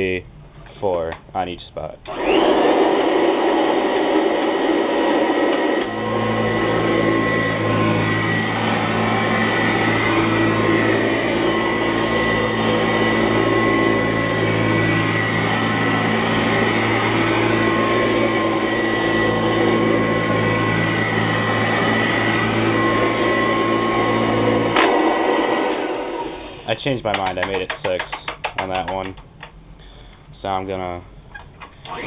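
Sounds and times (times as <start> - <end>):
vacuum cleaner running: 2.1 - 27.2.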